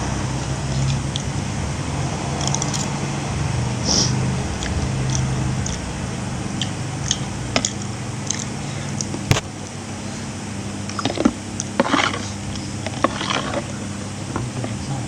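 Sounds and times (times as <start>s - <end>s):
steady low hum: 0.0s - 15.0s
person chewing and biting food: 2.4s - 3.0s, 6.6s - 9.2s.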